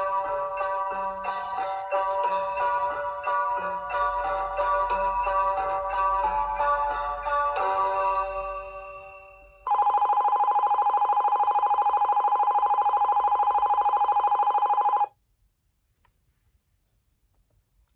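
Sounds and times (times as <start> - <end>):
alarm clock tune: 0.0 - 15.1
fast-pulsing electronic bell: 8.4 - 15.1.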